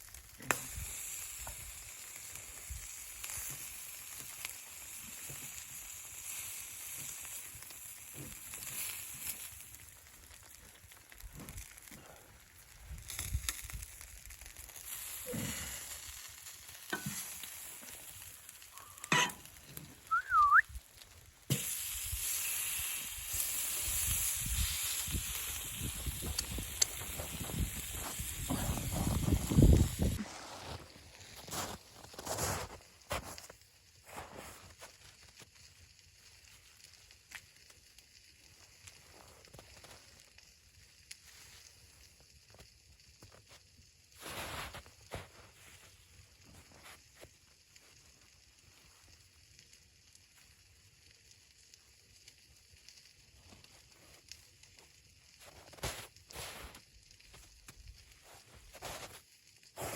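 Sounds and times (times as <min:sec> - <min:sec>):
food sizzling in a pan: 0:00.0 - 0:59.9
utensil stirring in a pan: 0:15.9 - 0:20.3.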